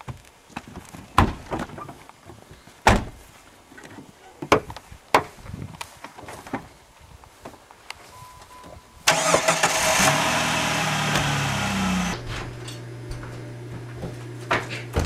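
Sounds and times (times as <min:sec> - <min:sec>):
car doors slamming: 0:02.8 - 0:03.2.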